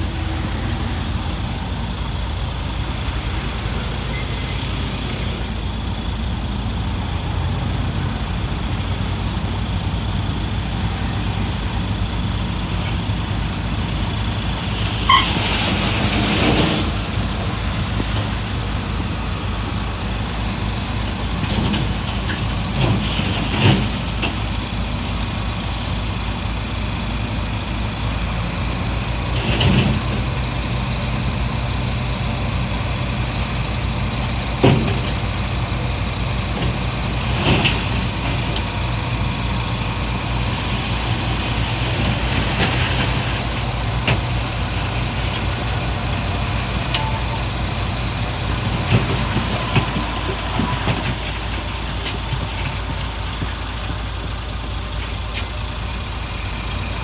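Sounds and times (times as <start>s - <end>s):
heavy diesel machinery running: 0.0s - 57.0s
metal clanks and squeals: 15.0s - 17.5s, 42.6s - 54.3s.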